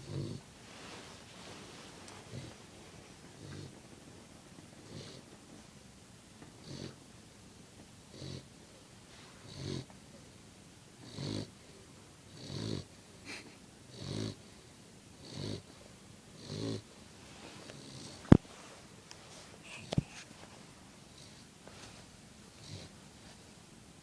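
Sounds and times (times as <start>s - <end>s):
puppy snoring: 0.0s - 1.5s, 2.1s - 2.6s, 3.3s - 3.9s, 4.8s - 5.3s, 6.6s - 7.0s, 8.1s - 8.5s, 9.2s - 9.9s, 11.0s - 14.6s, 15.2s - 17.0s, 17.7s - 18.4s, 21.1s - 21.5s, 22.5s - 23.0s.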